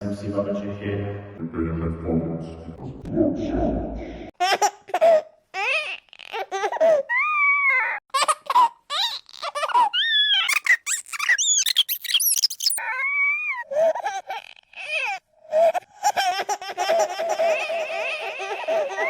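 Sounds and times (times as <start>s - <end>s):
baby giggling: 8.1s - 12.1s.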